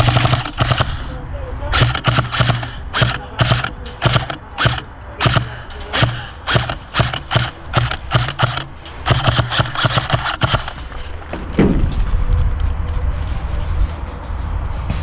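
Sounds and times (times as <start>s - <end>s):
airsoft rifle firing bursts: 0.0s - 11.2s
gearbox motor hum: 0.0s - 14.9s.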